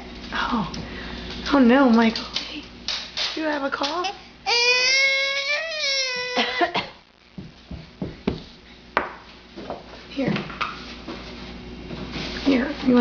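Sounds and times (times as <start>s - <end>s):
toddler whining: 4.5s - 6.7s.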